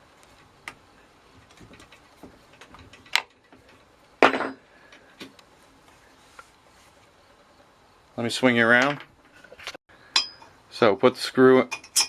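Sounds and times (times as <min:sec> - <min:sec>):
ringing metal clank: 0:10.1 - 0:10.5.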